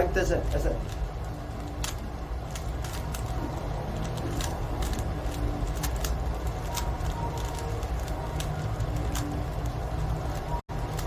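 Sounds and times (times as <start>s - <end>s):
steady low rumble: 0.0s - 11.0s
plastic puzzle cube clicking: 1.6s - 3.3s, 4.0s - 9.6s.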